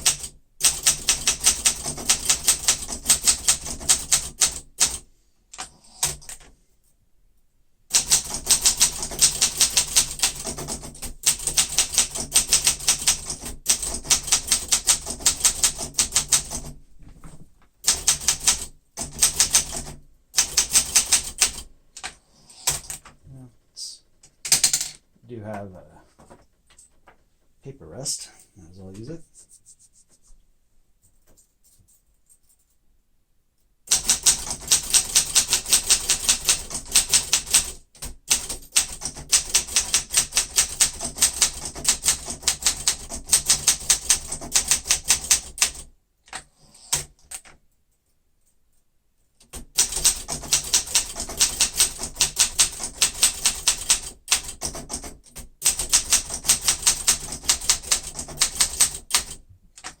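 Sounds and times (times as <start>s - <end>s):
typewriter keystroke clacks: 0.0s - 6.5s, 7.9s - 16.8s, 17.8s - 23.1s, 24.4s - 25.0s, 33.9s - 47.6s, 49.4s - 60.0s.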